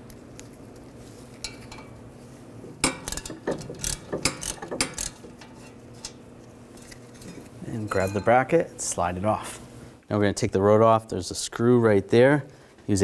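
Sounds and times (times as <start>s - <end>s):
hand ratchet clicking: 2.8s - 6.2s.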